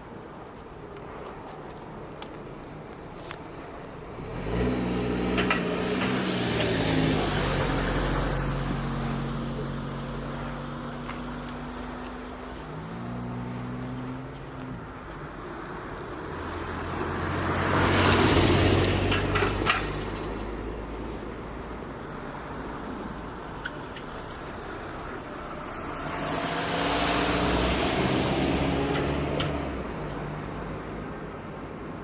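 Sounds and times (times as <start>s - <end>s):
road vehicles passing: 0.0s - 32.0s.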